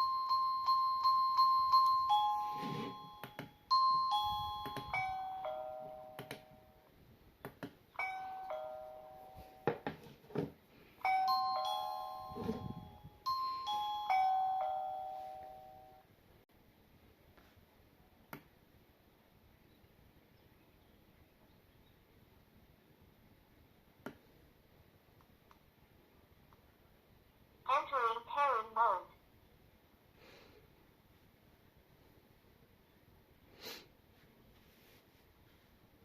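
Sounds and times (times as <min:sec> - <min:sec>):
electronic doorbell chime: 0:00.0 - 0:06.8, 0:08.0 - 0:09.8, 0:11.0 - 0:16.1.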